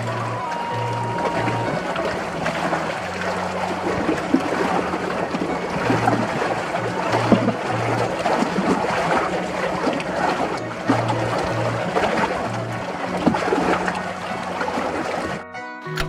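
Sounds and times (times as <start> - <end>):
water splashing and lapping: 0.0 - 15.4
low music notes: 0.0 - 16.0.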